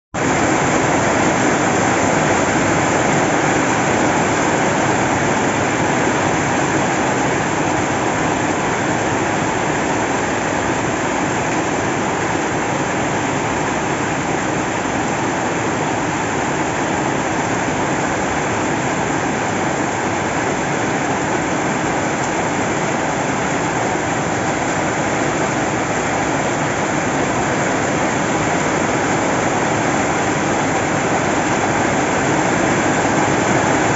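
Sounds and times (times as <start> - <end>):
heavy rain pouring: 0.2 - 33.9.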